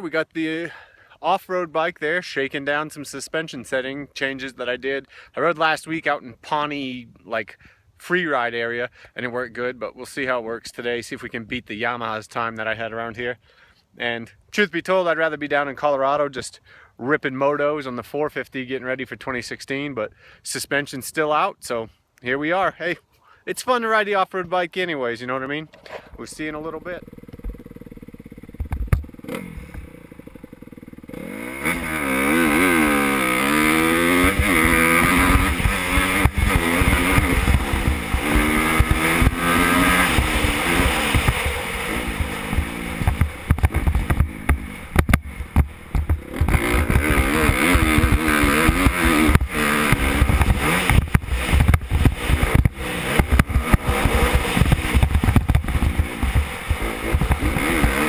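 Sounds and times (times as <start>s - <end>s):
motorcycle engine revving: 25.7s - 58.0s.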